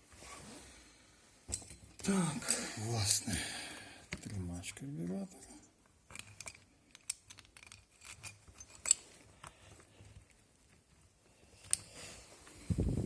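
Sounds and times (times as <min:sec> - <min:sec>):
small parts and tools clicking: 0:05.6 - 0:12.0.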